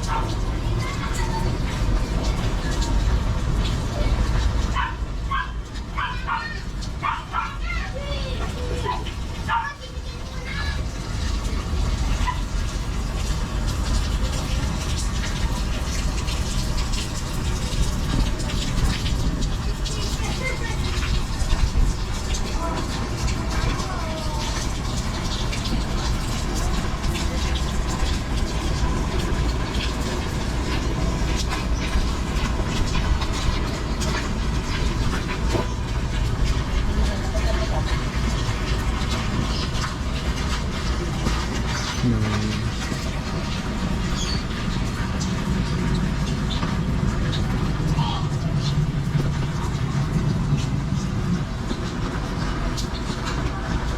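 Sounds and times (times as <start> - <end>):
rain falling: 0.0 - 53.9
water pouring and splashing: 0.0 - 53.9.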